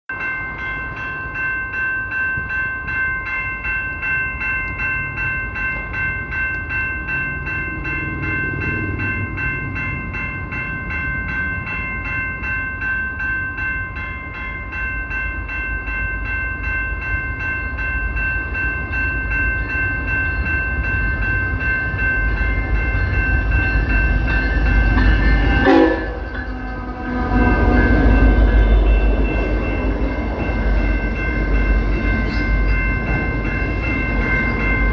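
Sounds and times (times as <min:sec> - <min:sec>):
low rumble of train: 0:00.1 - 0:34.9
train air horn blast: 0:25.6 - 0:27.6.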